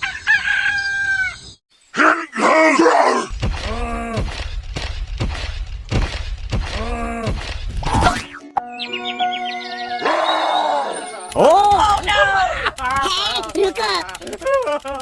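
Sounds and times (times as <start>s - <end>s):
person moaning: 3.1s - 4.3s, 6.8s - 8.0s.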